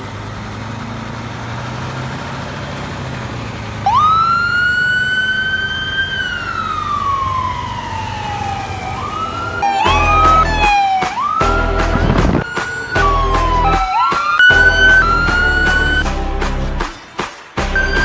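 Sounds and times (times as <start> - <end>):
fire truck siren wailing: 0.0 - 16.5, 17.6 - 18.0
truck engine running: 0.0 - 18.0
deep horn blast: 6.6 - 13.8, 14.4 - 16.8.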